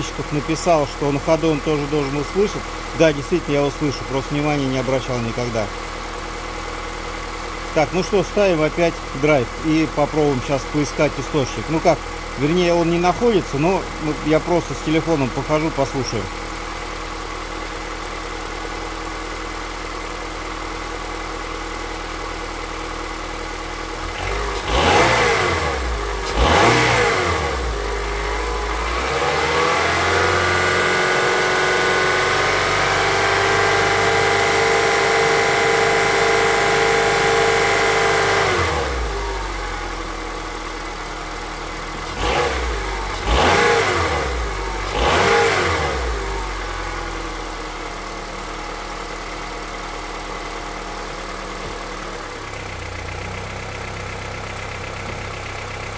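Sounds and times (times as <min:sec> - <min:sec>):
car engine idling and revving: 0:00.0 - 0:55.9
engine knocking: 0:48.0 - 0:55.9.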